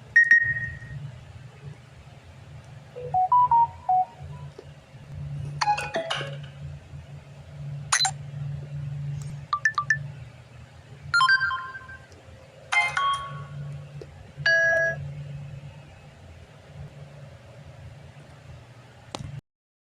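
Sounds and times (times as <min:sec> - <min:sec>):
low steady hum: 0:00.0 - 0:19.4
phone notification chimes: 0:03.0 - 0:04.2.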